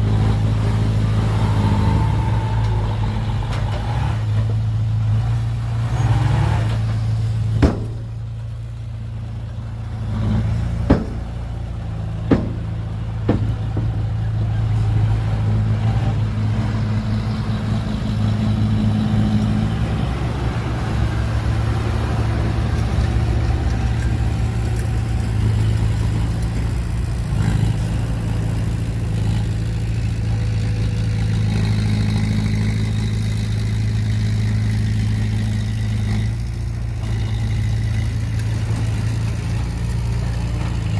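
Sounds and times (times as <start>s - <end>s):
diesel engine running: 0.0s - 40.9s
sharp knocks: 7.6s - 8.1s, 10.8s - 11.4s, 12.2s - 14.0s.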